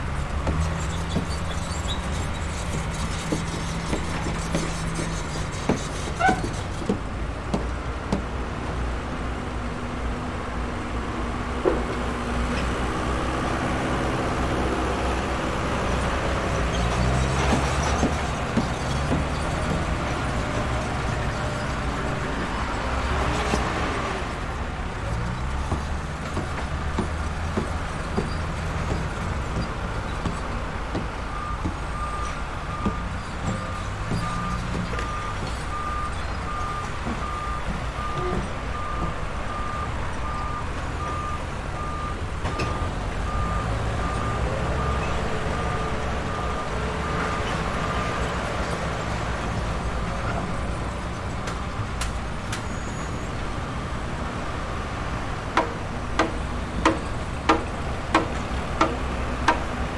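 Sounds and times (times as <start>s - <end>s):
heavy machinery engines running: 0.0s - 59.9s
reversing alarm beeps: 31.4s - 48.1s
knocks: 55.6s - 59.8s.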